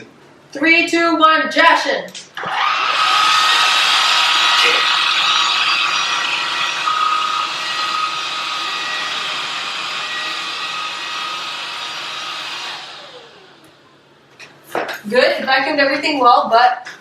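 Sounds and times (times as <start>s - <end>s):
stick vacuum motor whine: 2.4s - 14.0s.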